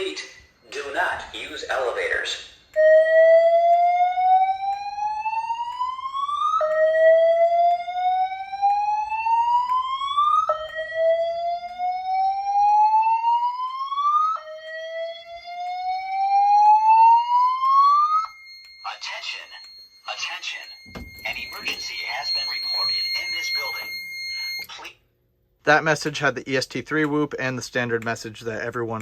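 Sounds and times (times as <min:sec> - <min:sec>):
rising whoop alarm tone: 0:02.8 - 0:18.8.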